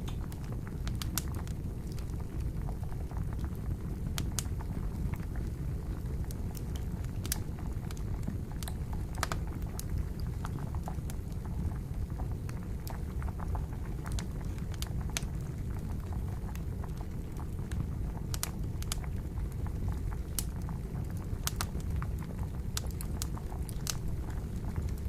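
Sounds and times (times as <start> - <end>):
campfire crackling and popping: 0.0 - 25.0
water boiling: 0.0 - 25.0.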